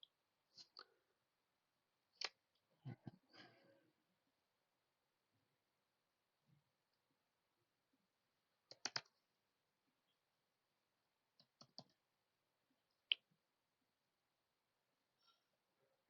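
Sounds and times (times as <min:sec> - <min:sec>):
mouse and keyboard clicks: 0:08.7 - 0:09.2, 0:11.4 - 0:12.0.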